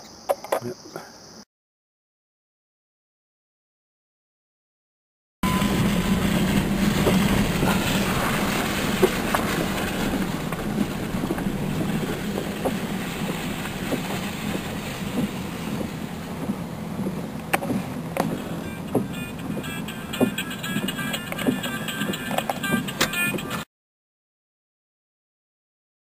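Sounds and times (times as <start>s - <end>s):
vehicle engine rumbling: 5.4s - 23.7s.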